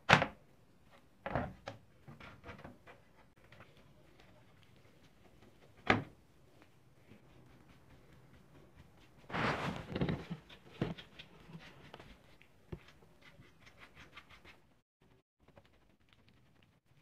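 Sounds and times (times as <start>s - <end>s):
plastic rattling and scraping: 9.3s - 11.5s.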